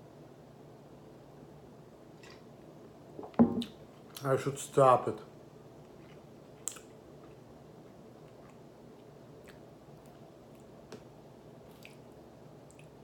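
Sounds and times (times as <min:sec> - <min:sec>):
low hiss of room noise: 0:00.0 - 0:13.0
faint chewing and mouth sounds: 0:02.1 - 0:02.6, 0:05.7 - 0:13.0.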